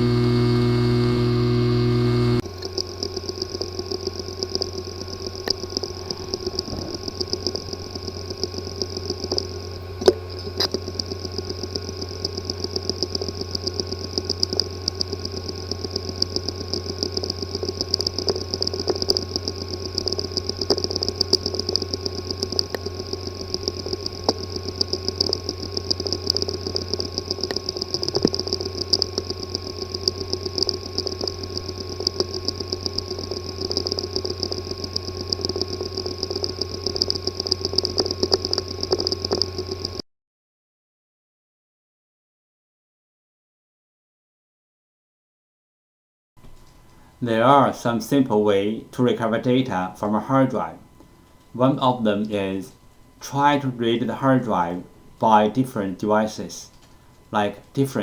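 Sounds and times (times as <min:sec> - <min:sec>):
hard drive spinning with whine: 0:00.0 - 0:40.0, 0:46.4 - 0:58.0
hard drive ticking: 0:00.0 - 0:40.0, 0:46.4 - 0:58.0
sharp hard drive click: 0:00.0 - 0:40.0.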